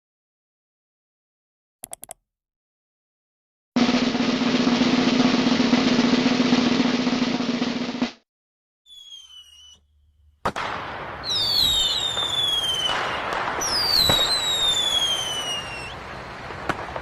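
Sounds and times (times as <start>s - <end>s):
snare drum roll: 3.8s - 8.2s.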